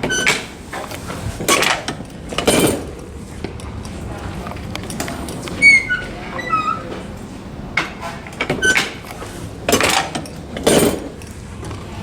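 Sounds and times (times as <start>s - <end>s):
door closer squeaks: 0.0s - 0.4s, 5.3s - 8.0s.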